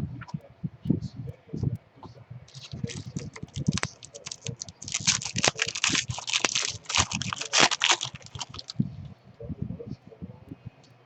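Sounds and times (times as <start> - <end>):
cards flipping clicks and rustles: 2.5 - 8.7
foil wrappers crinkling: 2.5 - 8.7.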